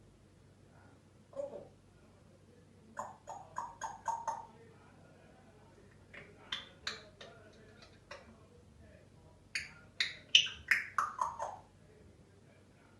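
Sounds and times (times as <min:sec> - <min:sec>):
bird chirping: 0:03.0 - 0:04.5, 0:06.1 - 0:08.3, 0:09.5 - 0:11.7.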